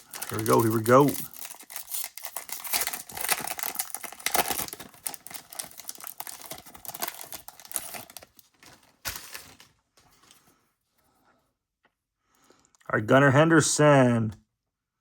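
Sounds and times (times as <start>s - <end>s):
plastic wrapping crinkling and tearing: 0.0s - 10.4s.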